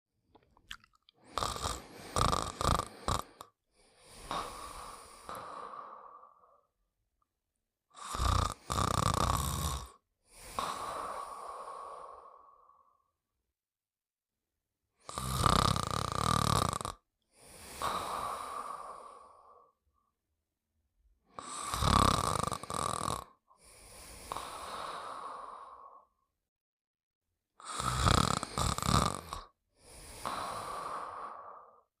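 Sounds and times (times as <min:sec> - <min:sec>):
cartoon character snoring: 0:01.2 - 0:06.4, 0:08.0 - 0:12.3, 0:15.0 - 0:19.8, 0:21.4 - 0:26.2, 0:27.6 - 0:31.9.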